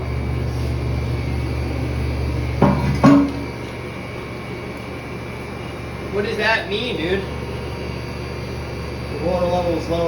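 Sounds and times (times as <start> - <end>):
low machine hum: 0.0 - 10.0
short knocks: 2.6 - 3.5.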